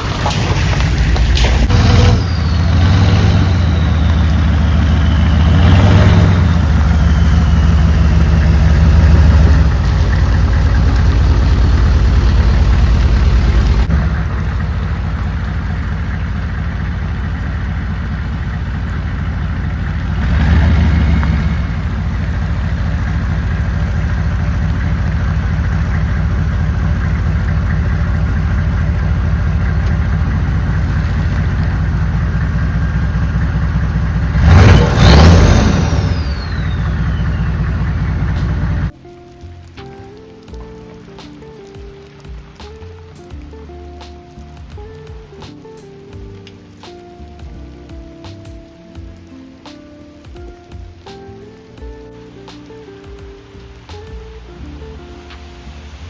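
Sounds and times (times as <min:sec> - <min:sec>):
vehicle engine running: 0:00.0 - 0:39.0.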